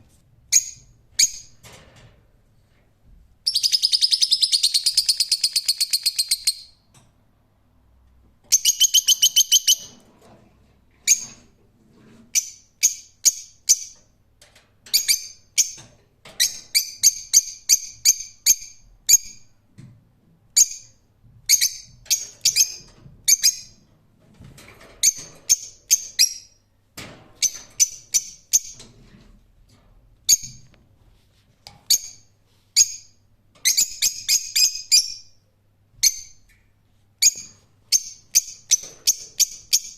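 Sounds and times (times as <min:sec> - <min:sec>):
lovebird chattering and chirping: 0:03.5 - 0:06.8, 0:08.5 - 0:10.0.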